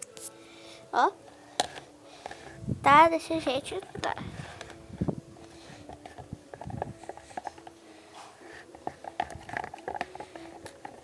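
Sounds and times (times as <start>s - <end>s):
spoon stirring thick slime: 3.6s - 11.0s.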